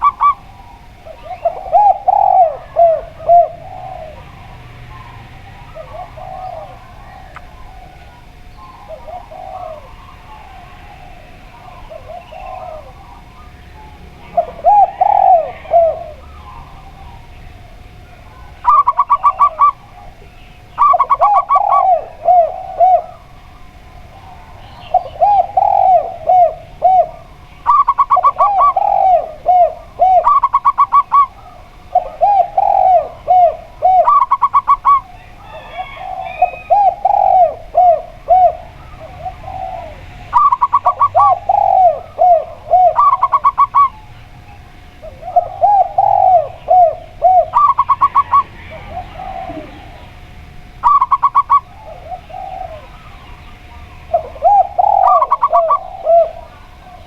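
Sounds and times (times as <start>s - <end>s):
doves cooing: 0.0s - 57.0s.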